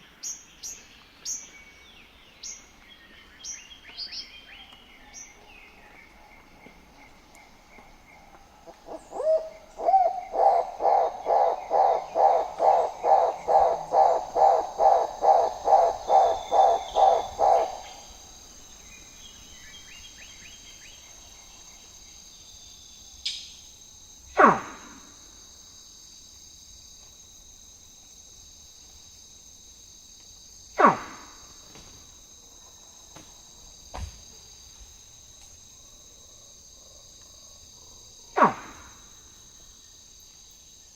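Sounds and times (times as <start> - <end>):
high insect chorus: 0.0 - 40.9
animal hooting: 8.8 - 17.9.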